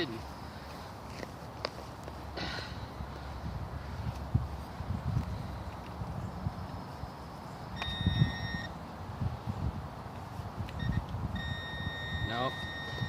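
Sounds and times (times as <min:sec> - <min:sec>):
metal detector beep tone: 0:07.8 - 0:08.8, 0:10.8 - 0:13.0.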